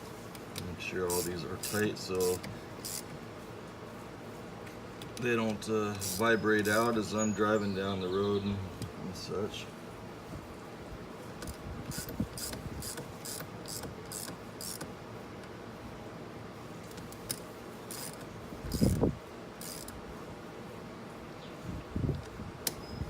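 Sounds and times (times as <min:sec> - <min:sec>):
ratchet wrench clicking: 0:01.1 - 0:03.1, 0:06.0 - 0:06.8, 0:11.4 - 0:14.9, 0:17.2 - 0:19.0, 0:19.6 - 0:20.0.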